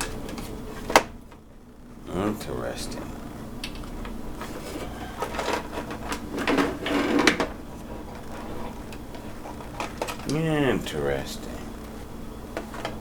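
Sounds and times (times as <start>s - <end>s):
steady low hum: 0.0s - 13.0s
hard parts clattering and knocking: 4.4s - 10.4s.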